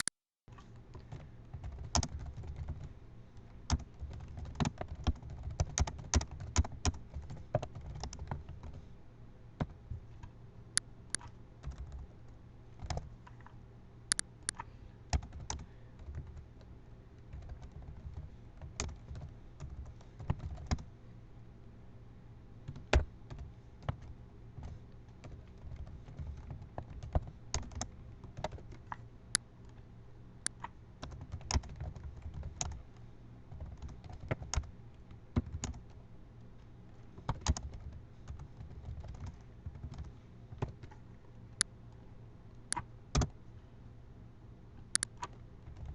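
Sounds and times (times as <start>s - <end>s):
keyboard typing: 0.9s - 8.8s, 11.1s - 12.0s, 12.8s - 13.5s, 14.1s - 16.5s, 24.6s - 29.0s, 30.4s - 32.8s, 33.5s - 34.7s, 35.4s - 35.9s, 37.2s - 41.0s.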